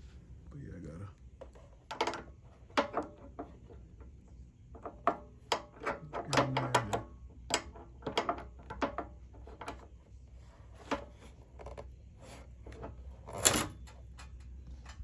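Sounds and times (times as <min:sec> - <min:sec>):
metal parts clicking and rattling: 0:11.6 - 0:15.0.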